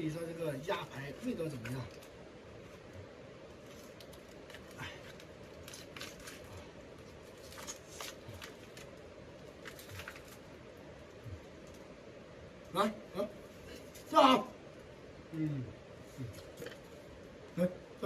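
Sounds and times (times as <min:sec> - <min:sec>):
steady low hum: 0:00.0 - 0:18.0
plastic food packet crinkling: 0:03.7 - 0:06.5, 0:09.6 - 0:10.4.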